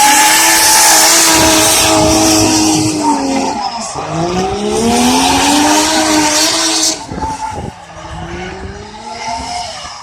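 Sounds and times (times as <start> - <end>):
car engine at high revs: 0.0 - 10.0
tyre screech: 0.0 - 10.0.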